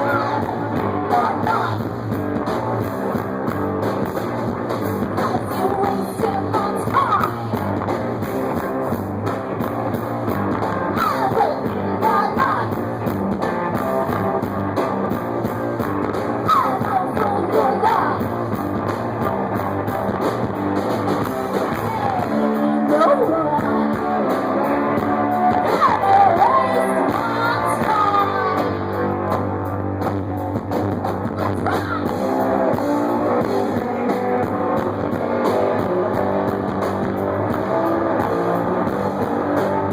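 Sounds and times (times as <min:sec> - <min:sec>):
person singing: 0:00.0 - 0:02.0, 0:05.2 - 0:07.6, 0:10.9 - 0:12.8, 0:16.4 - 0:18.3, 0:21.7 - 0:29.1, 0:31.4 - 0:36.4
electric guitar: 0:00.0 - 0:39.9
rock band playing loudly: 0:00.0 - 0:39.9.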